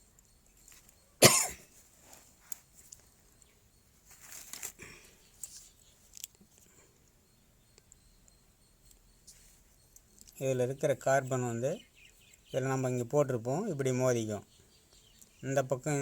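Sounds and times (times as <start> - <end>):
person coughing: 1.2 - 1.7
breathy noise: 4.6 - 5.4.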